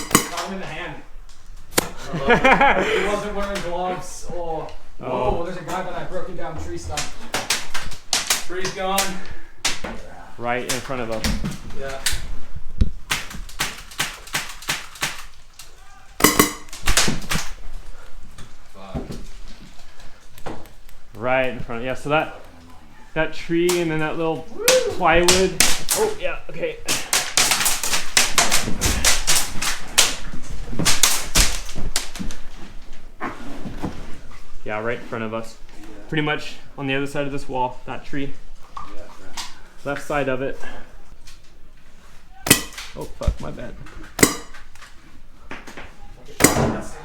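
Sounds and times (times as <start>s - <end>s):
airsoft rifle shots: 0.0s - 0.5s, 16.2s - 17.5s, 42.4s - 42.9s.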